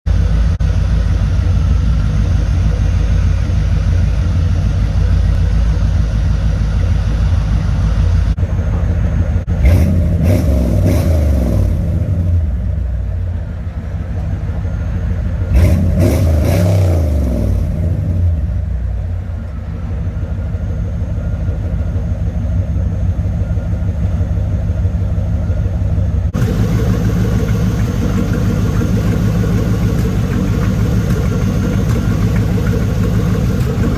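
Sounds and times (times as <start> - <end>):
car exhaust idling: 0.0 - 33.9
engine revving: 0.2 - 13.2, 14.1 - 19.0, 26.3 - 33.9.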